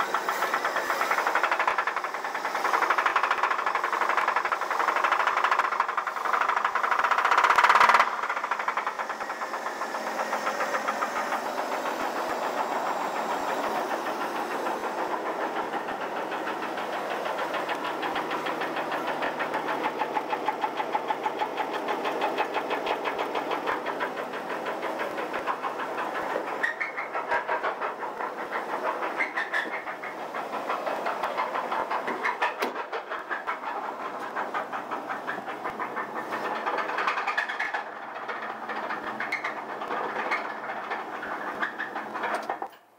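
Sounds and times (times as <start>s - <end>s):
engine rod knock: 0.6s - 42.7s.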